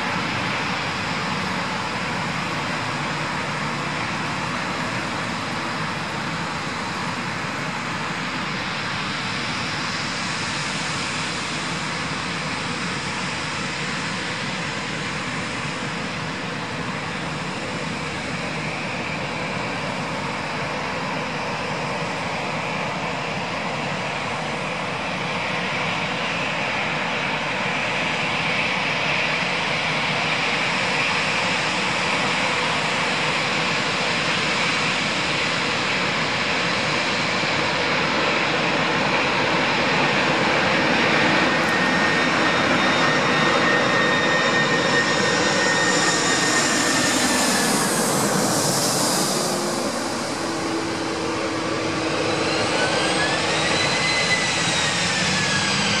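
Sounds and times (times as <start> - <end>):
jet engines roaring and whining: 0.0 - 56.0
aircraft passing by: 27.6 - 56.0.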